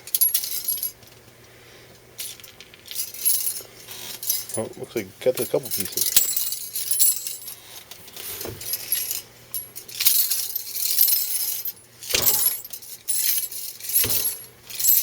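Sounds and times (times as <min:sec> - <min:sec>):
brass cases clinking on wire cage: 0:05.4 - 0:15.0.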